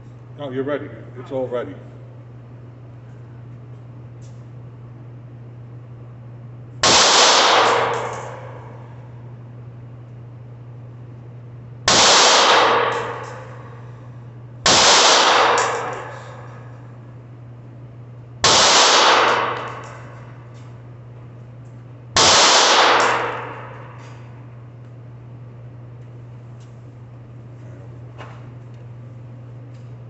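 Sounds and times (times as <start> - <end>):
steady low hum: 0.0 - 30.0
pistol shots ringing indoors: 6.8 - 9.4, 11.8 - 17.2, 18.4 - 24.6.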